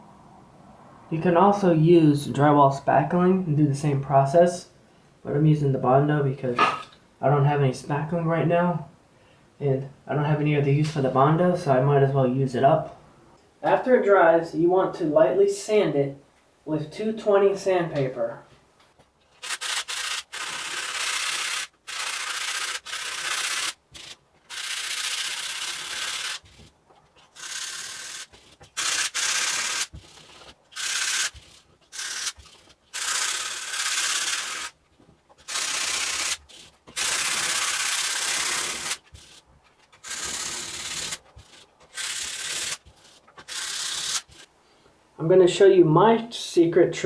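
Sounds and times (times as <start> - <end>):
sandpaper sanding strokes: 19.4 - 26.7, 27.3 - 34.8, 35.4 - 39.4, 40.0 - 44.5.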